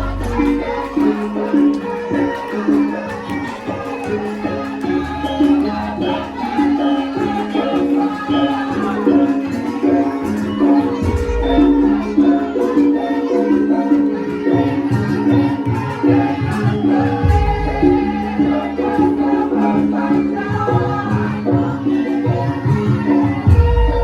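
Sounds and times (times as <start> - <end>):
metallophones playing: 0.0 - 24.0.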